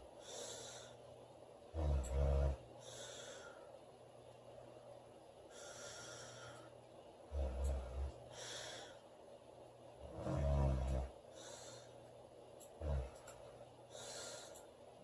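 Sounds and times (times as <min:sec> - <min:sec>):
soft breathy breaths: 0:00.0 - 0:15.0
woman snoring: 0:01.7 - 0:03.6, 0:07.3 - 0:08.9, 0:10.0 - 0:11.9, 0:12.8 - 0:13.2.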